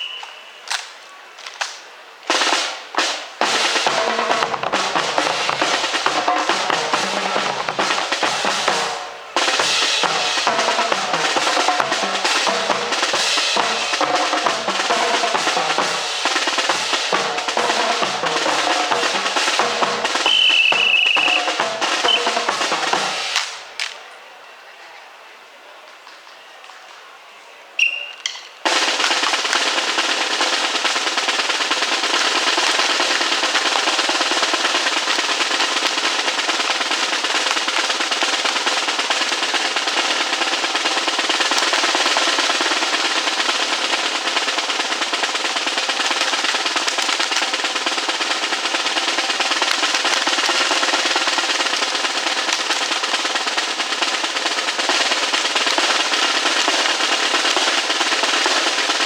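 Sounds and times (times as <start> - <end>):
snare drum roll: 2.3 - 23.9, 28.6 - 59.0.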